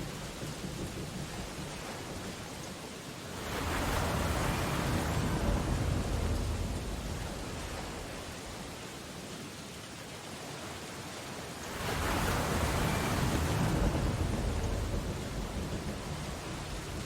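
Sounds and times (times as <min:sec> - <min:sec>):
rain hissing: 0:00.0 - 0:09.3, 0:11.5 - 0:17.0
surf: 0:03.3 - 0:08.8, 0:11.3 - 0:17.0.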